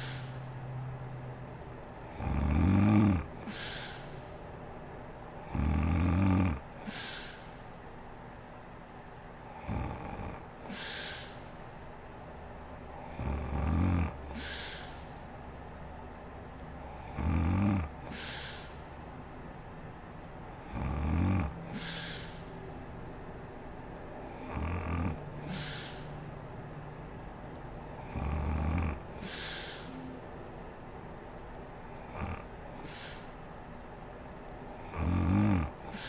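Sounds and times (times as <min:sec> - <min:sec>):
woman snoring: 0:00.0 - 0:00.4, 0:02.1 - 0:04.1, 0:05.4 - 0:07.4, 0:09.6 - 0:11.4, 0:13.0 - 0:15.1, 0:16.9 - 0:18.7, 0:20.6 - 0:22.4, 0:24.3 - 0:26.1, 0:28.0 - 0:29.9, 0:32.0 - 0:33.3, 0:34.8 - 0:36.0
breathy exhale: 0:00.0 - 0:00.5, 0:03.4 - 0:04.3, 0:06.8 - 0:07.6, 0:10.6 - 0:11.6, 0:14.3 - 0:15.2, 0:18.0 - 0:18.9, 0:21.6 - 0:22.6, 0:25.4 - 0:26.3, 0:29.1 - 0:30.1, 0:32.1 - 0:33.4.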